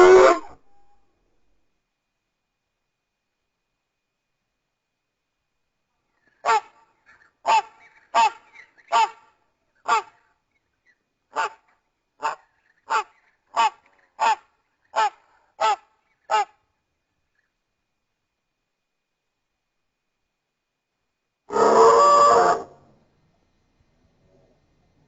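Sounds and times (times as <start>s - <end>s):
goose-like honks: 0.0s - 0.6s, 6.3s - 10.2s, 11.4s - 16.6s.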